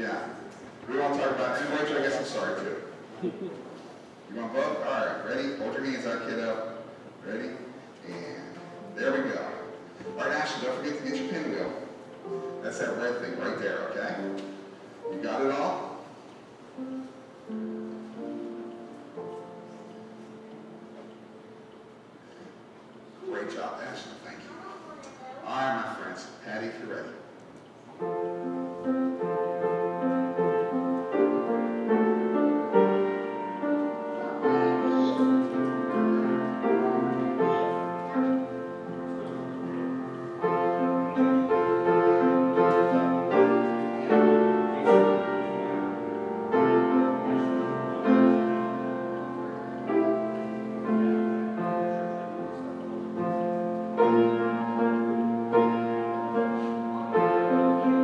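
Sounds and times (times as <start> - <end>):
slow solo piano piece: 27.9 - 58.0.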